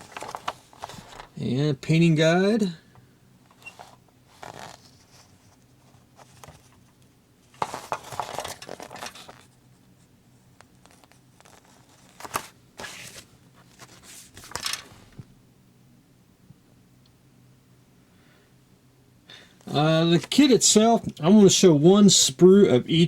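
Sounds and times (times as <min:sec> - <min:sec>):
paper rustling and crinkling: 0:00.0 - 0:01.4, 0:03.6 - 0:09.6, 0:10.6 - 0:15.2.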